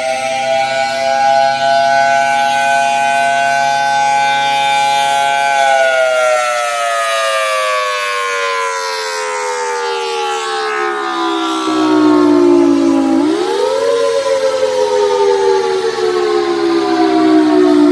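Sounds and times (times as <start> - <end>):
outdoor warning siren wailing: 0.0 - 17.9.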